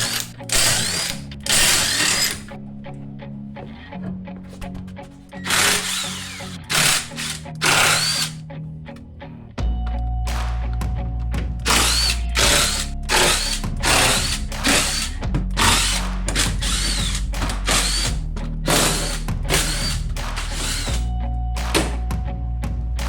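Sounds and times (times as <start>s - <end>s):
power tool bursts: 0.0s - 2.5s, 5.4s - 8.4s, 11.7s - 16.0s, 16.6s - 21.1s
background music with bass: 0.0s - 23.0s.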